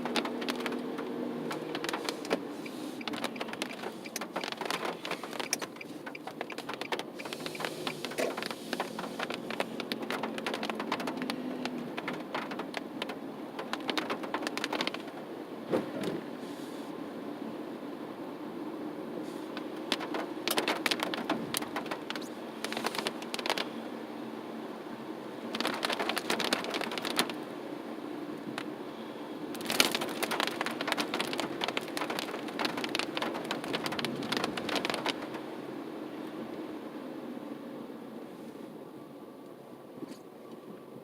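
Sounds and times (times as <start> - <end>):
ice drops tapping on car roof: 0.0 - 15.2, 19.6 - 23.7, 25.5 - 27.4, 29.6 - 35.5
car running hum: 0.0 - 41.0.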